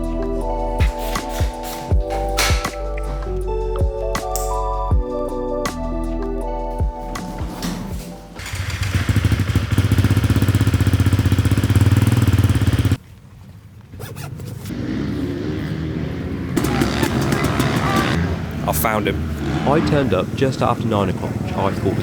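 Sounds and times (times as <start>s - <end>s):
motorcycle engine running: 6.8s - 13.0s, 14.7s - 18.6s.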